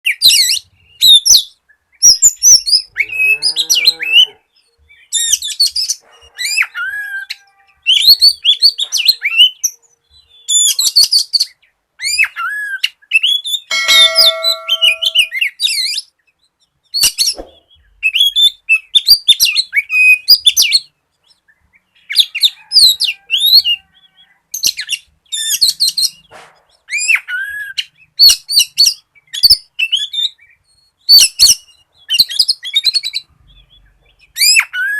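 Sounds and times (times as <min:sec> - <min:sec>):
buzzy bird note: 0:13.7 - 0:15.4.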